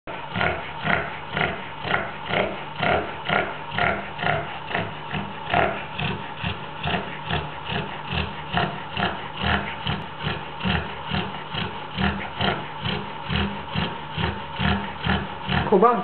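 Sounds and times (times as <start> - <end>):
dog snoring: 0.1 - 16.0.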